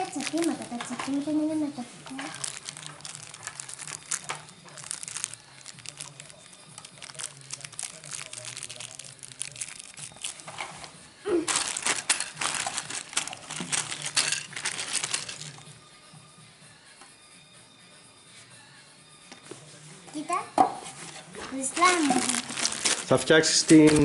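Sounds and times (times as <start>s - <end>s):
plastic packaging crinkling: 0.0s - 1.4s, 2.0s - 10.7s, 11.4s - 15.7s, 21.7s - 24.0s.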